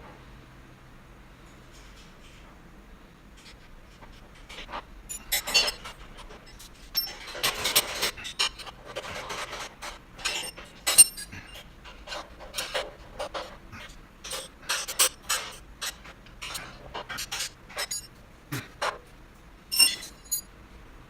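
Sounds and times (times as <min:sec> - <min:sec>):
metal parts clinking and knocking: 0:06.9 - 0:08.4, 0:10.2 - 0:11.3, 0:17.8 - 0:18.1, 0:19.7 - 0:20.5.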